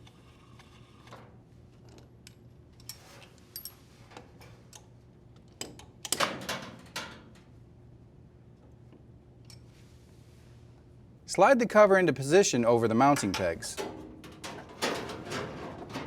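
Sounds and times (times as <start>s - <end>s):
clatter of handling: 13.4s - 16.0s.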